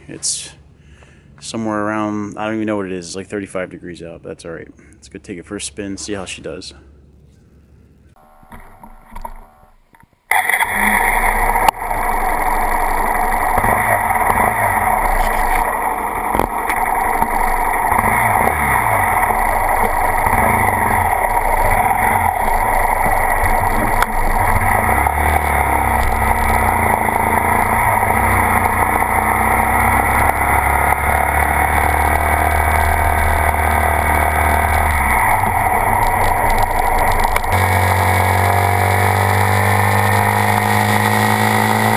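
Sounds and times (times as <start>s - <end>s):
motorcycle engine running: 10.6s - 41.9s.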